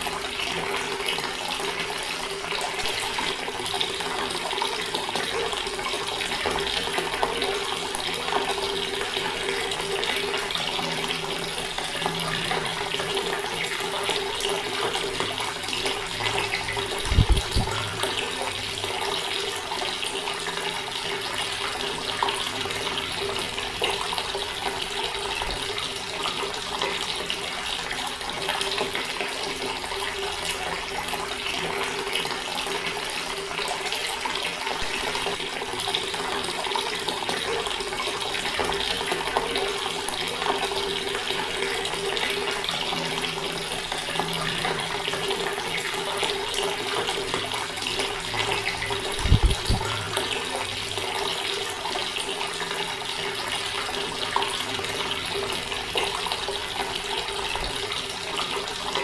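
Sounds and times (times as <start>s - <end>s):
water tap running: 0.0s - 59.0s.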